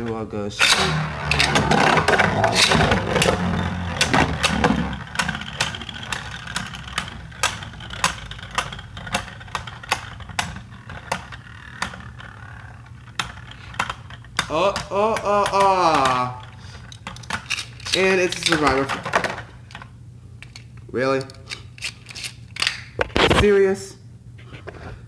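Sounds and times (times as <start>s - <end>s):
spinning tops whirring: 0.6s - 19.7s
spinning tops clicking and knocking: 0.6s - 23.0s.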